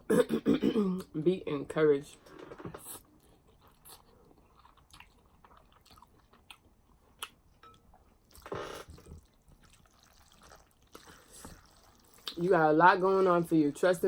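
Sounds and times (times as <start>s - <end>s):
person chewing food: 3.0s - 12.4s.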